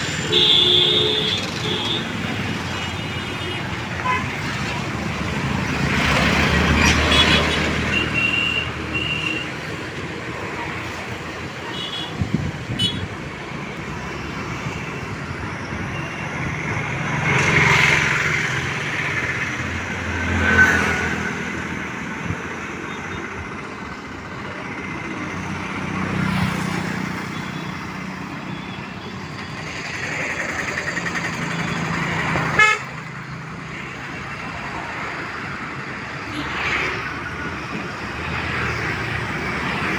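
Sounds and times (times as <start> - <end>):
vehicles going by: 0.0 - 39.9
vehicle horn toots: 32.6 - 32.9.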